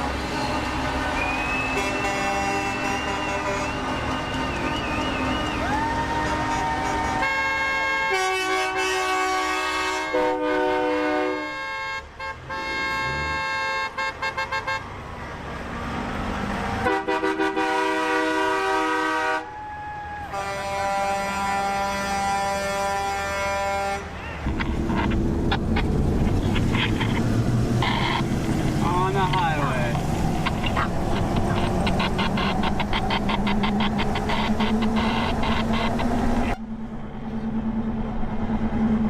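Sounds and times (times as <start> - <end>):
vehicle horns honking: 0.2 - 5.5, 6.2 - 14.9, 16.8 - 19.5, 20.3 - 24.5
short quick horn toots: 1.6 - 4.1, 6.5 - 14.8.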